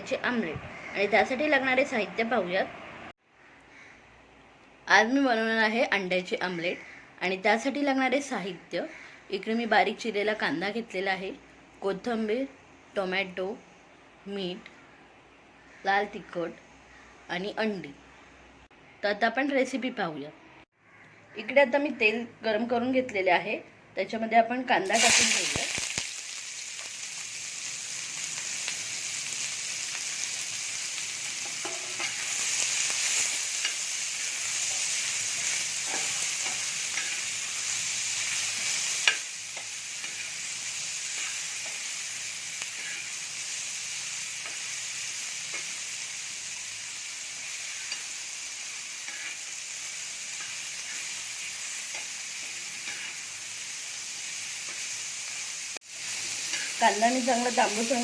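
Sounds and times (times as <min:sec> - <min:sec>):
onion sizzling in oil: 0:24.8 - 0:58.0.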